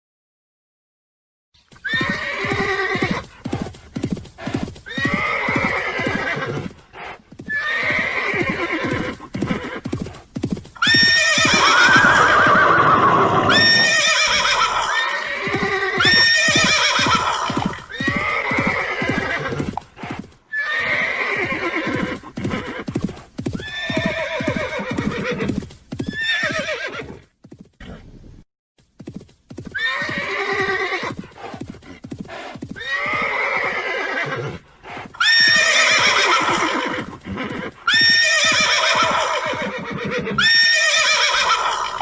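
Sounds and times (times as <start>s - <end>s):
galloping hooves: 1.6s - 20.4s, 21.5s - 27.9s, 28.8s - 33.3s, 34.8s - 39.7s
horses whinnying: 1.8s - 3.3s, 4.8s - 9.9s, 10.8s - 22.9s, 23.6s - 27.2s, 29.8s - 31.2s, 32.8s - 42.0s.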